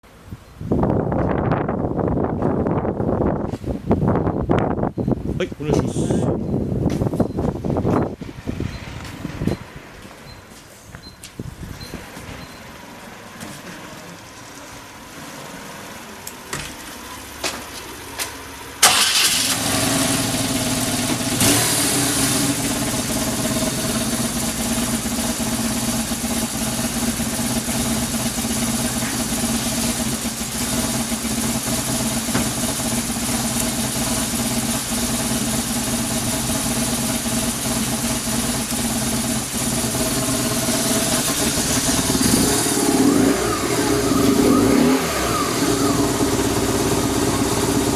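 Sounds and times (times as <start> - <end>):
motorcycle engine starting and idling: 11.7 - 47.9.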